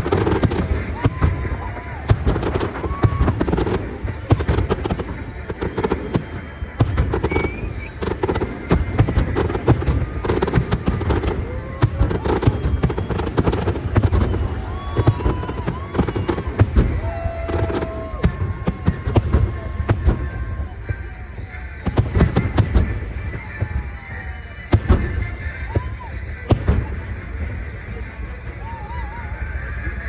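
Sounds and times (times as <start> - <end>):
fireworks bangs and crackles: 0.0 - 30.0
music: 0.0 - 30.0.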